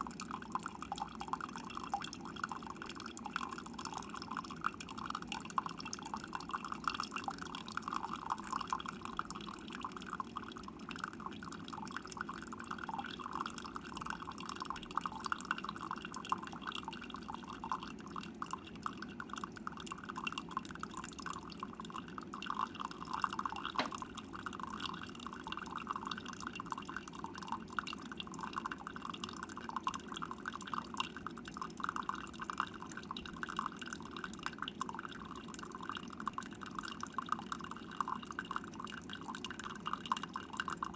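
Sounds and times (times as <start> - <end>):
coffee dripping into mug: 0.0 - 40.9
coffee maker click: 23.8 - 24.2.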